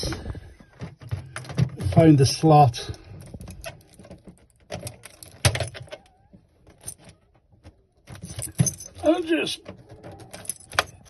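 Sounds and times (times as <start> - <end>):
metal key clicking and scraping: 9.7 - 11.0.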